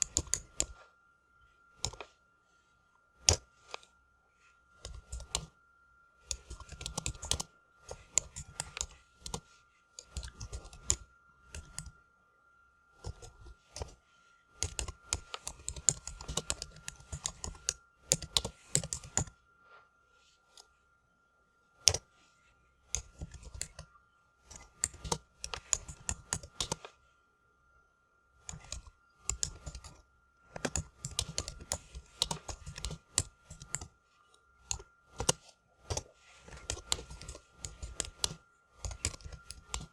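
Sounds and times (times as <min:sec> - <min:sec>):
computer keyboard typing: 0:00.0 - 0:00.8, 0:01.8 - 0:02.1, 0:03.2 - 0:03.9, 0:04.8 - 0:05.5, 0:06.3 - 0:12.0, 0:13.0 - 0:19.4, 0:21.8 - 0:22.1, 0:22.9 - 0:26.9, 0:28.4 - 0:34.0, 0:34.6 - 0:39.9
faint steady high tone: 0:00.0 - 0:39.9.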